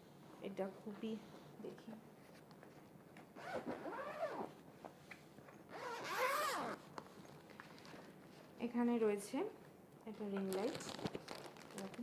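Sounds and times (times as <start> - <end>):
zipper being pulled open: 3.4 - 4.5, 5.7 - 6.8.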